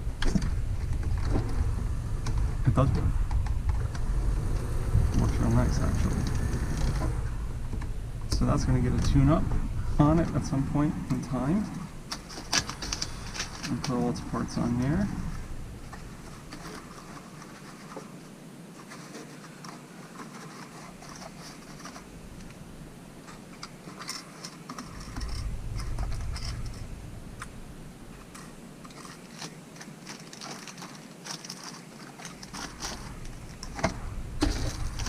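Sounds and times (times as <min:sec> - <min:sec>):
low rumbling bump: 0:00.0 - 0:16.5, 0:24.9 - 0:28.7, 0:32.6 - 0:35.0.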